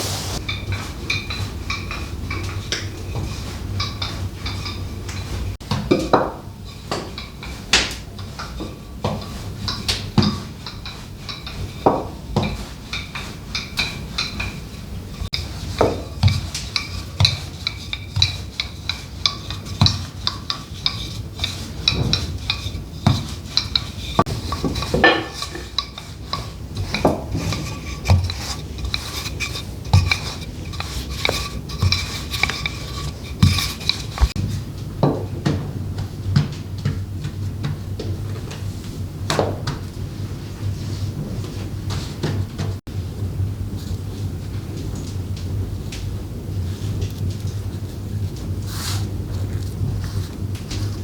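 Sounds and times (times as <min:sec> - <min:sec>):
stirring: 0:00.4 - 0:05.6, 0:06.6 - 0:34.4
utensils clinking against dishes: 0:00.4 - 0:34.4.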